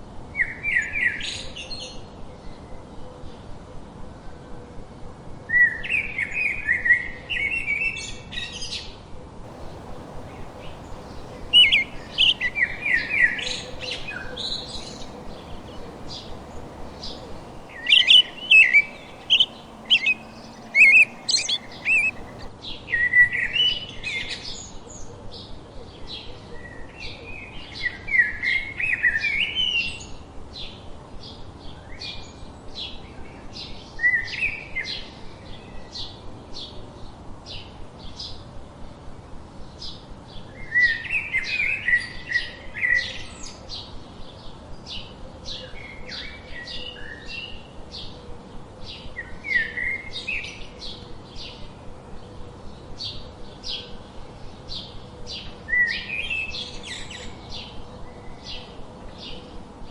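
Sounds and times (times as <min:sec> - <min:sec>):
faint high bird chips: 0:09.5 - 0:22.5
songbird warbling: 0:09.5 - 0:22.5.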